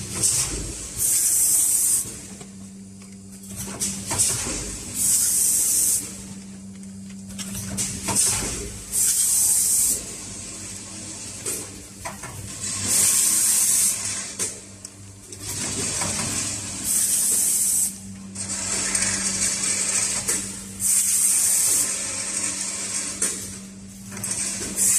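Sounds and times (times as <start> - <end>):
compressed air hiss: 5.0 - 6.1, 8.9 - 10.0, 16.8 - 18.0
machine mechanism clicks and knocks: 6.7 - 8.8.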